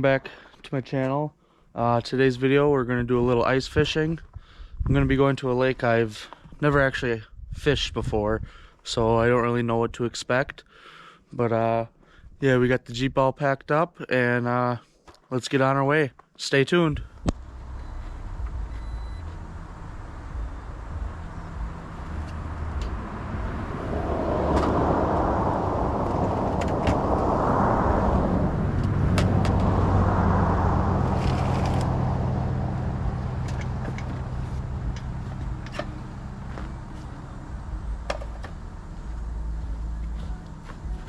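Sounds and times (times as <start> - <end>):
car engine hum: 17.0 - 41.0
tyre and road noise: 17.0 - 41.0.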